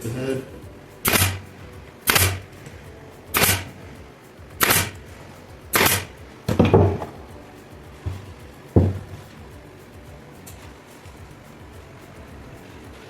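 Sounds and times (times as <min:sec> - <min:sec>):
nail gun firing into wood: 0:01.1 - 0:01.4, 0:02.1 - 0:02.4, 0:03.4 - 0:03.7, 0:04.6 - 0:05.0, 0:05.8 - 0:07.0.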